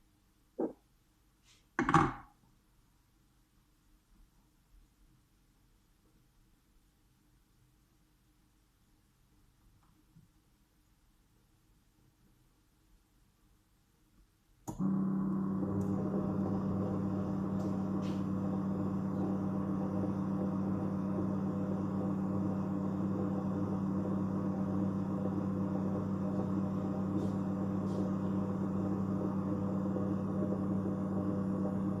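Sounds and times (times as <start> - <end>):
kitchen appliance motor humming: 14.7 - 32.0.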